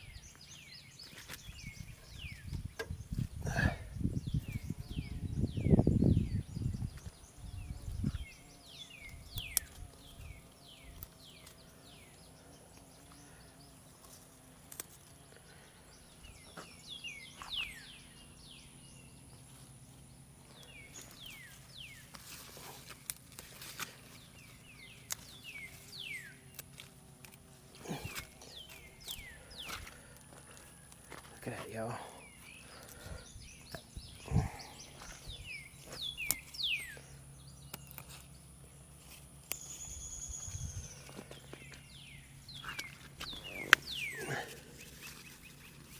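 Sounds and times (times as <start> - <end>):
birds chirping: 0.0 - 45.9
faint clicks and rustles: 19.3 - 31.4.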